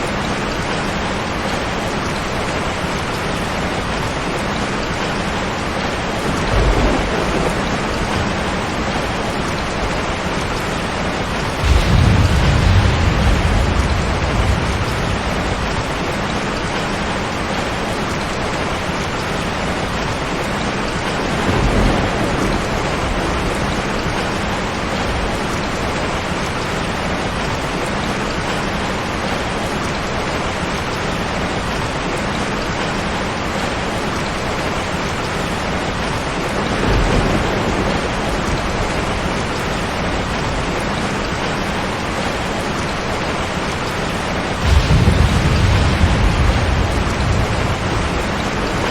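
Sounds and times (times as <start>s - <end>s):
heavy rain on a tin roof: 0.0s - 48.9s
thunder rumbling: 0.1s - 26.8s, 35.1s - 48.9s.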